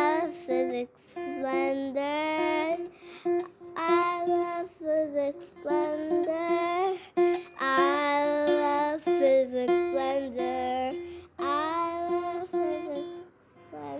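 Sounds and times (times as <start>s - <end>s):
plucked strings: 0.0s - 13.9s
high voice singing: 3.7s - 13.9s.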